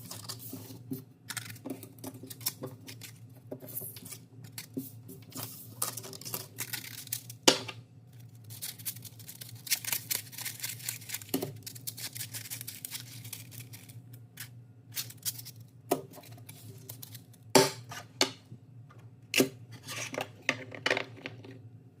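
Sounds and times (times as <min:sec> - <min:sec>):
plastic cards clicking and rustling: 0:00.0 - 0:17.4
low steady hum: 0:00.0 - 0:22.0.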